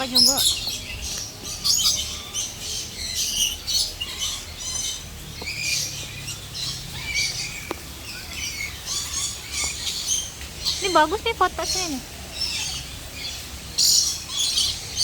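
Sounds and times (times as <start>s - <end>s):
flock of birds squawking: 0.0s - 15.0s.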